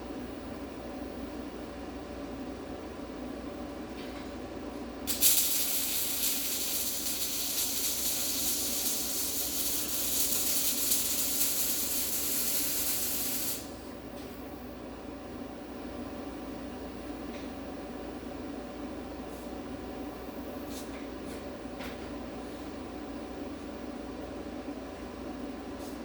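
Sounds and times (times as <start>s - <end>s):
welding arc striking crack: 5.1s - 13.6s
welding arc hissing: 5.1s - 13.8s.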